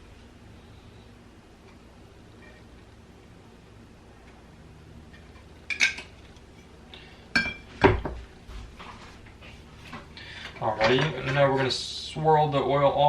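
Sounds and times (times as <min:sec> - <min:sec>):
kitchenware clinking: 0:05.7 - 0:06.2, 0:07.3 - 0:08.1.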